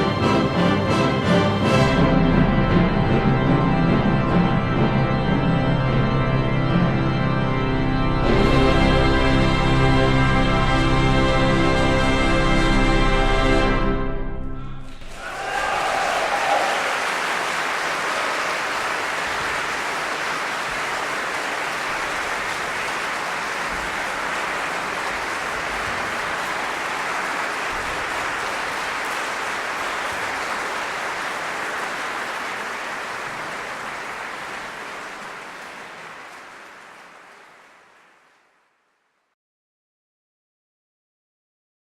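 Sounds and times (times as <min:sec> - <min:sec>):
audience applauding: 0:14.8 - 0:39.0.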